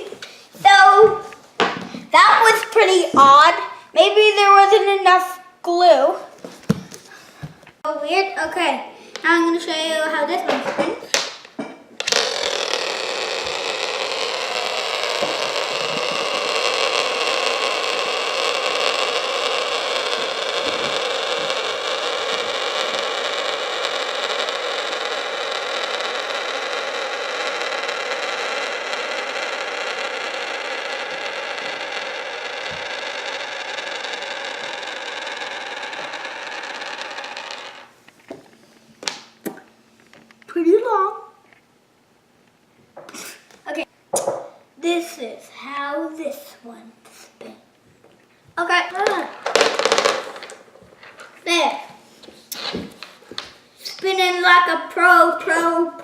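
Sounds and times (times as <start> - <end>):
hand spinner whirring: 12.0 - 37.9.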